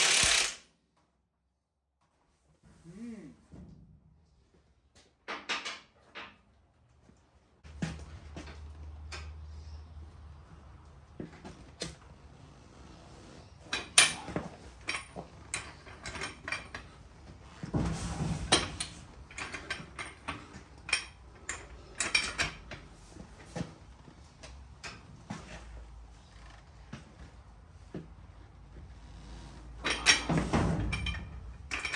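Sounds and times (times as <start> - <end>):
metal tools clanking: 29.8 - 31.9.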